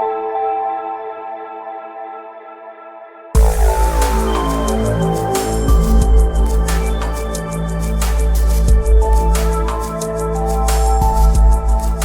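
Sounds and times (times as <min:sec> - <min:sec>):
ambient music chord and melody: 0:00.0 - 0:12.0.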